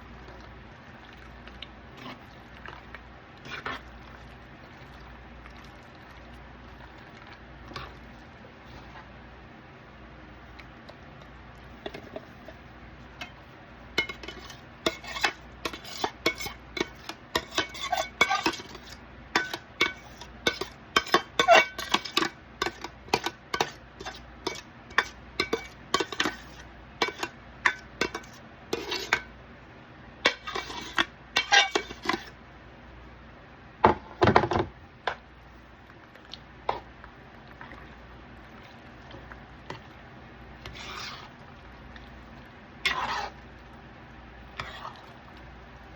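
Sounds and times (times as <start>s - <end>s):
utensil scraping cast iron pan: 14.0s - 29.3s, 30.2s - 32.4s, 40.6s - 41.4s, 42.8s - 43.4s.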